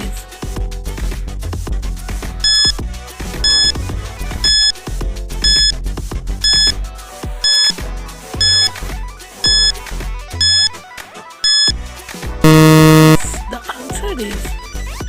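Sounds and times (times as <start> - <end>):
high electronic timer beeps: 2.4 - 2.8, 3.4 - 3.8, 4.4 - 4.8, 5.4 - 5.8, 6.4 - 6.8, 7.4 - 7.8, 8.4 - 8.8, 9.4 - 9.8, 10.4 - 10.8, 11.4 - 11.7, 12.4 - 13.3.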